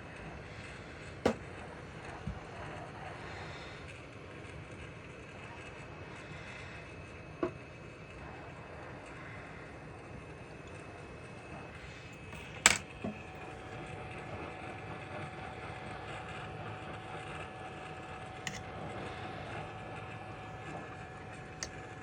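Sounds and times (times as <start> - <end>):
hot air station blowing: 0.0 - 22.0.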